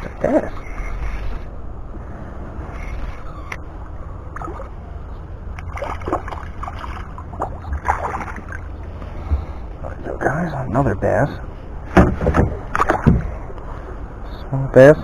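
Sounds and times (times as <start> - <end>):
steady low rumble: 0.0 - 15.0
water sloshing and splashing: 2.7 - 4.8, 5.5 - 9.8, 11.8 - 14.0
short splashes or knocks: 5.6 - 8.6, 11.9 - 13.4.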